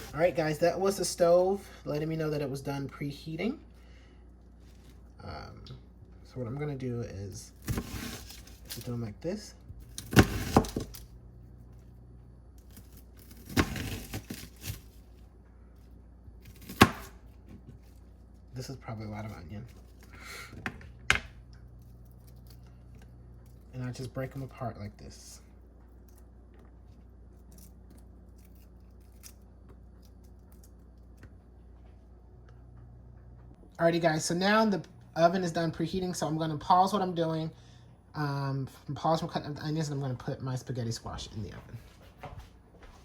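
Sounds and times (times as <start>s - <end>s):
low steady hum: 0.0s - 43.0s
onion tearing crackle: 7.5s - 9.1s, 9.7s - 11.7s, 12.5s - 15.3s, 16.3s - 20.2s, 21.4s - 24.8s, 26.0s - 31.3s.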